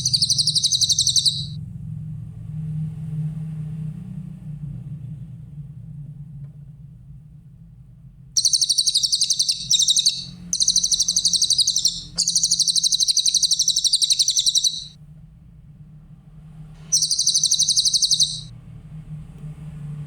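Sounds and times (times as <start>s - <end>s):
faint low hum: 0.0s - 1.6s, 8.4s - 14.9s, 16.9s - 18.5s
songbird rapid high trills: 0.0s - 1.6s, 8.4s - 14.9s, 16.9s - 18.5s.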